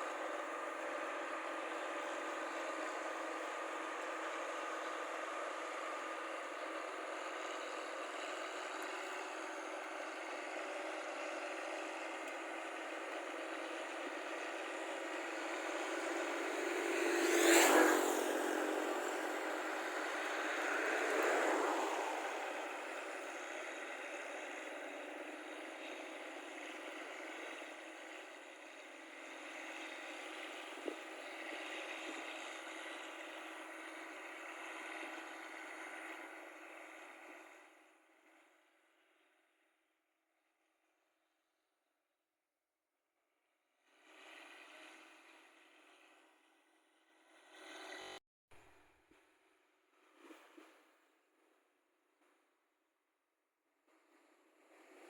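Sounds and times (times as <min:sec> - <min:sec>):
engine and road noise: 0:00.0 - 0:39.3, 0:43.9 - 0:48.6, 0:53.9 - 0:55.0
vehicle passing by: 0:14.4 - 0:25.6.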